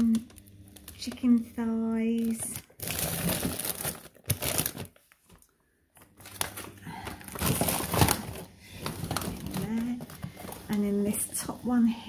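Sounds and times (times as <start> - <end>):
plastic bags crinkling: 0.0 - 11.5.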